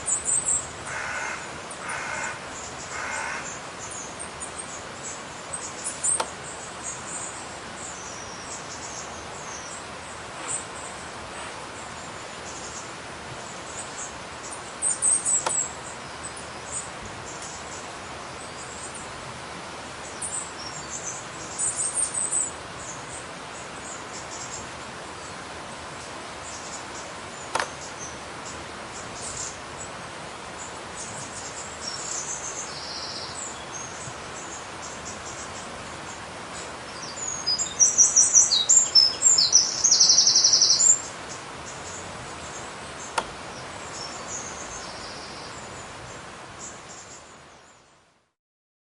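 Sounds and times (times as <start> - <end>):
birds chirping: 20.0 - 47.8
sharp click: 27.5 - 27.8.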